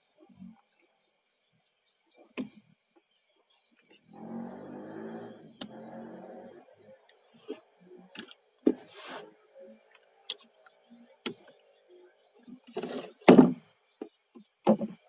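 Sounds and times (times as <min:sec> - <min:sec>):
high-pitched hiss: 0:00.0 - 0:15.0
heavy thumps: 0:13.2 - 0:13.7.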